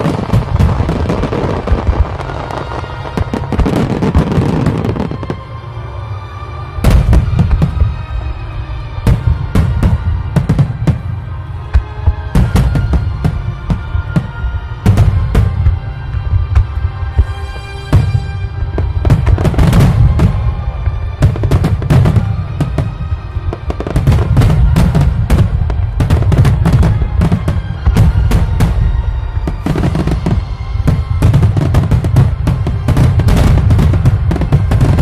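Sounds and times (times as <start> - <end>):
fireworks bursting: 0.0 - 5.5, 9.0 - 35.0
music with sustained notes: 0.0 - 35.0.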